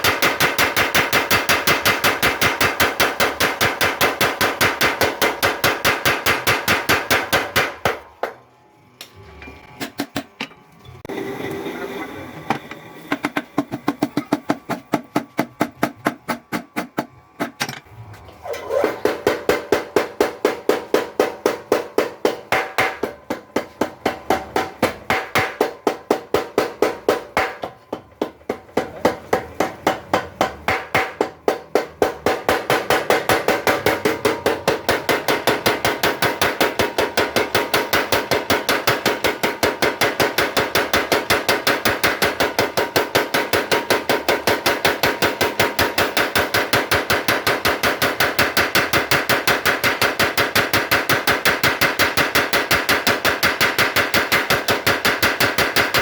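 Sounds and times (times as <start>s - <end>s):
power hammer metallic strikes: 0.0s - 8.4s, 29.8s - 56.0s.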